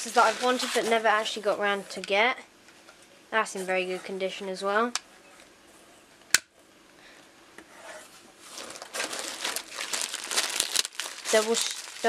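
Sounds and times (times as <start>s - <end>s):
packaging crinkling: 8.4s - 12.0s.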